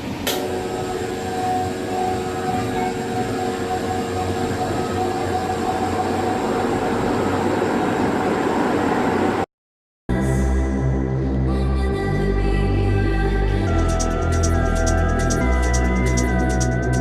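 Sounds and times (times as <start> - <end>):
ceiling fan whirring: 0.0 - 9.4, 13.2 - 17.0.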